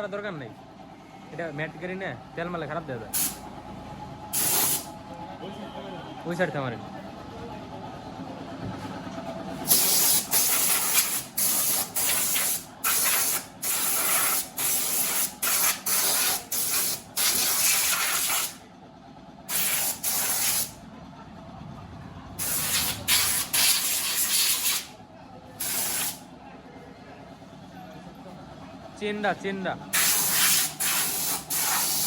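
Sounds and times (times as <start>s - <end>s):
air spray gun hissing bursts: 3.1s - 3.4s, 4.3s - 4.9s, 9.6s - 18.6s, 19.5s - 20.8s, 22.4s - 24.9s, 25.6s - 26.2s, 29.9s - 32.0s.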